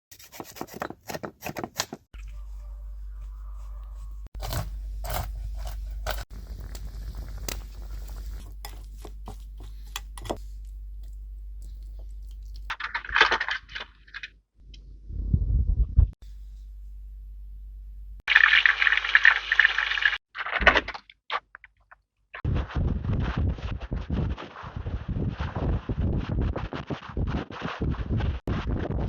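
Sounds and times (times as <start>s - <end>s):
steady low hum: 2.2s - 12.7s, 15.0s - 18.2s.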